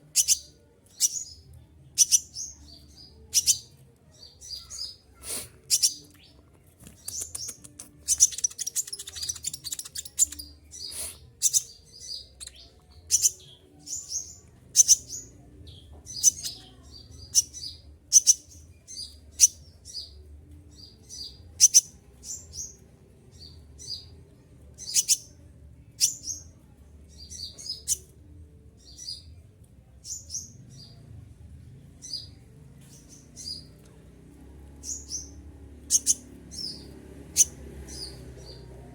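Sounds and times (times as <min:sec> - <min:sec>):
bird rapid twittering: 0:06.9 - 0:10.5, 0:35.9 - 0:38.2.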